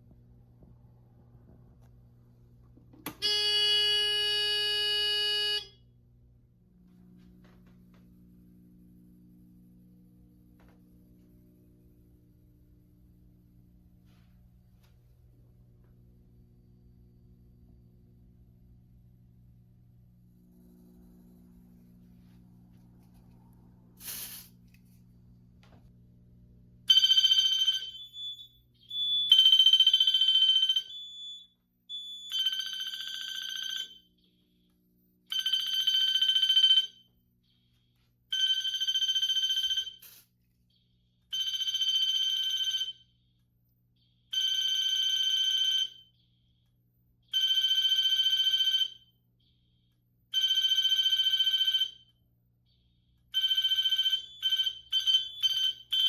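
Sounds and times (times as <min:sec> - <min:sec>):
fire alarm horn blasts: 0:03.0 - 0:06.1, 0:24.0 - 0:24.5, 0:26.9 - 0:56.0.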